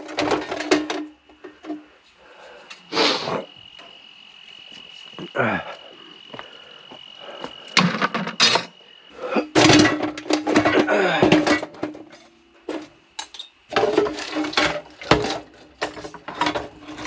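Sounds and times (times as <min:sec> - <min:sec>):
scrap metal clattering: 0:00.0 - 0:01.9, 0:07.8 - 0:08.7, 0:09.6 - 0:17.0.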